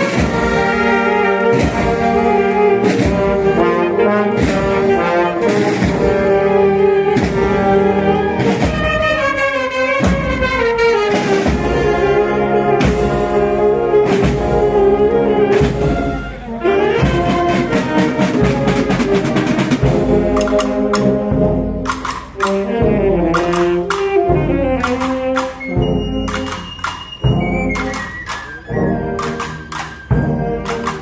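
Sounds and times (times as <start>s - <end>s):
drum and cymbal strikes: 0.0s - 3.7s, 12.8s - 13.5s
brass melody: 0.0s - 31.0s
wind band playing: 0.0s - 31.0s.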